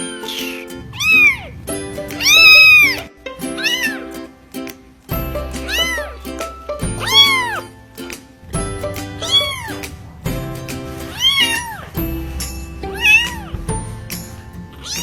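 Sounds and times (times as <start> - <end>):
background music: 0.0 - 15.0
cat meowing: 0.3 - 1.5, 2.2 - 4.1, 7.0 - 7.6, 9.2 - 9.8, 13.0 - 13.6.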